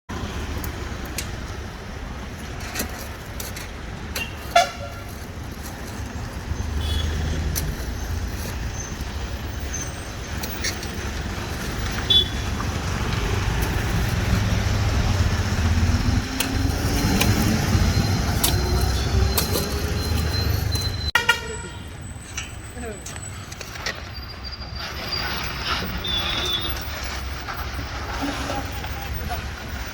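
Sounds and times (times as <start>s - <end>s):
road traffic: 0.1s - 29.9s
truck horn toots: 4.2s - 5.0s, 12.0s - 12.5s, 21.1s - 21.9s.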